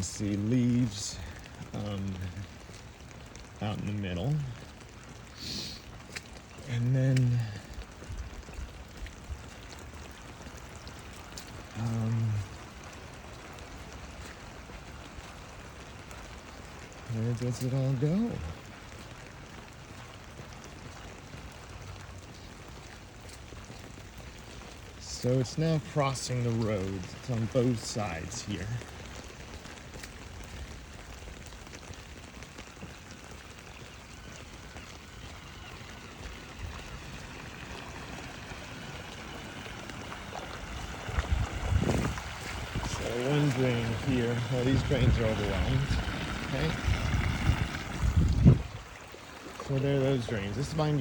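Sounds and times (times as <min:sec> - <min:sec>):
floodwater rushing: 0:00.0 - 0:51.0
man's short low voice: 0:11.8 - 0:12.5.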